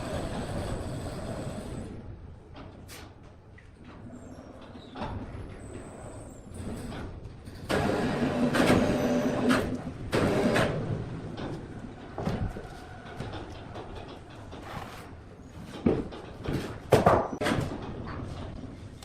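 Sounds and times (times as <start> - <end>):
sawmill machinery working: 7.7 - 14.7.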